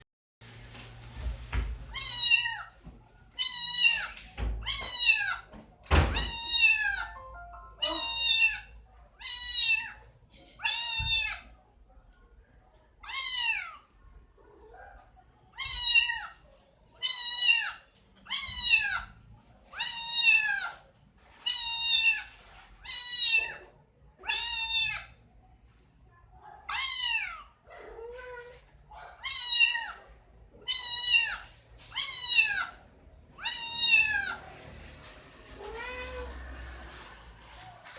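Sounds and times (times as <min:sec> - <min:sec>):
kitten meowing: 0:06.1 - 0:07.2, 0:07.8 - 0:10.0, 0:10.6 - 0:11.4, 0:24.2 - 0:25.1, 0:33.4 - 0:34.4.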